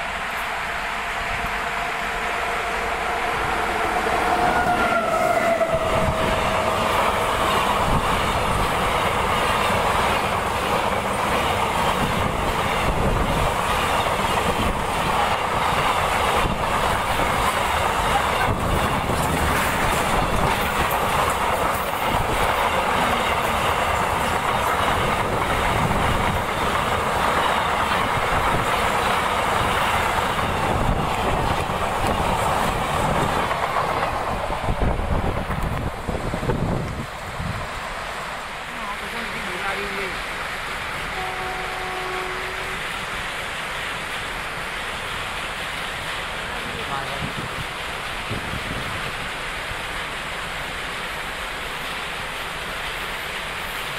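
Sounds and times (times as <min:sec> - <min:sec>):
train rushing past: 0:00.0 - 0:53.9
train horn: 0:00.2 - 0:07.0, 0:41.0 - 0:43.1.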